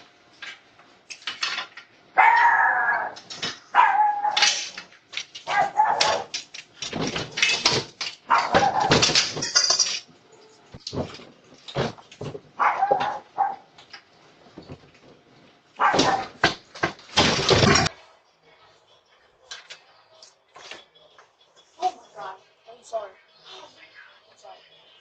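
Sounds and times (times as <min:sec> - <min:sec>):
dog barking and whining: 0:02.2 - 0:04.6, 0:05.4 - 0:06.4, 0:08.3 - 0:09.1, 0:12.6 - 0:13.7, 0:15.8 - 0:16.4.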